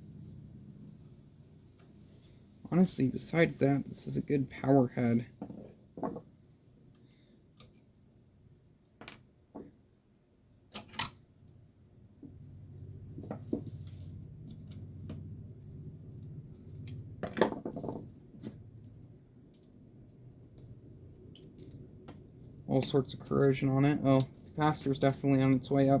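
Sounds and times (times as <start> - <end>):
low steady hum: 0.0 - 26.0
metal parts clinking and knocking: 7.6 - 7.9, 10.7 - 11.2.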